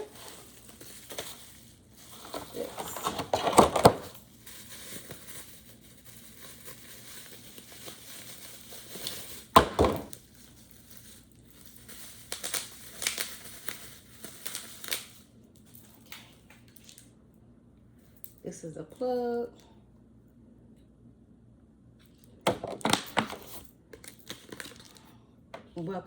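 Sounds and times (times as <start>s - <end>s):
packaging crinkling and rustling: 0.0s - 17.1s, 22.6s - 25.2s.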